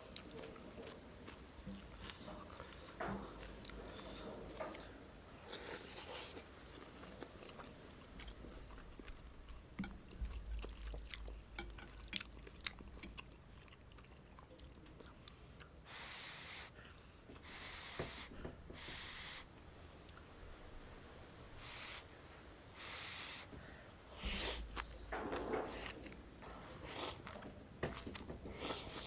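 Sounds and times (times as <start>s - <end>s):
person chewing: 0.0s - 4.9s, 5.5s - 15.8s
short breathy bursts: 17.4s - 19.5s, 21.6s - 22.1s, 22.7s - 24.8s.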